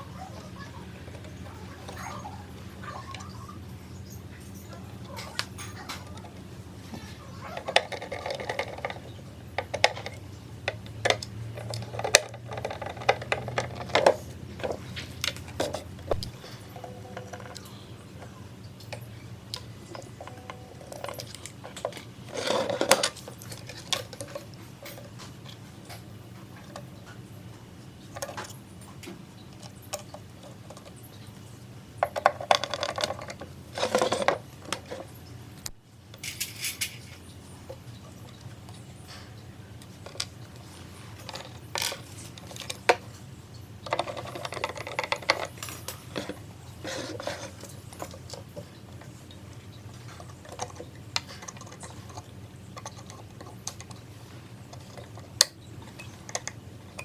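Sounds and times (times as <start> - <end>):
metal parts and tools clattering: 20.2 - 25.2, 32.0 - 35.1, 36.2 - 37.3.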